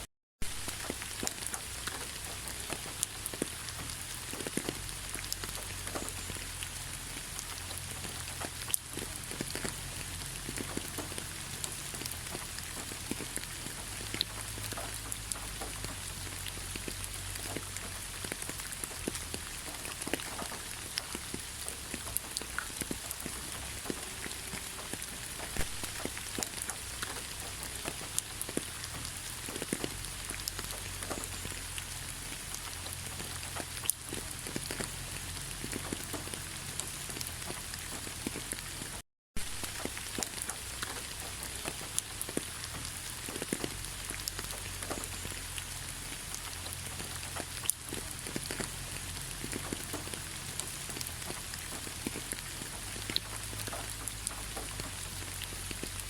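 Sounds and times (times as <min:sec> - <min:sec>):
raindrops ticking close by: 0:00.0 - 0:56.0
steady rain falling: 0:00.0 - 0:56.0.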